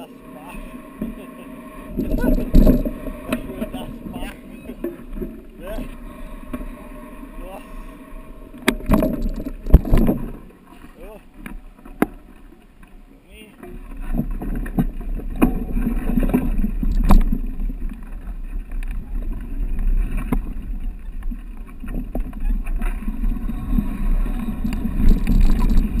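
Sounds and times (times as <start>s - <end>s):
wind buffeting microphone: 1.8s - 10.5s, 14.0s - 26.0s.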